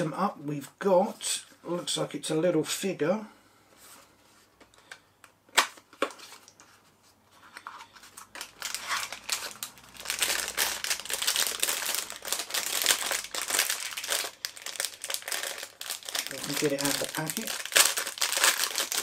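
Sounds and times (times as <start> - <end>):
plastic packet crinkling: 8.1 - 19.0.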